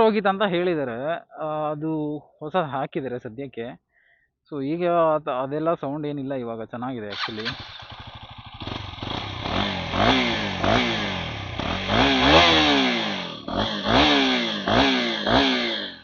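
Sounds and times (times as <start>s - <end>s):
motorcycle engine revving: 7.1s - 16.0s.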